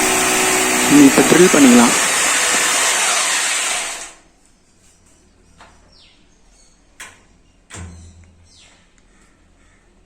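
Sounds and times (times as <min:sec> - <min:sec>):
electric drill running: 0:00.0 - 0:04.2.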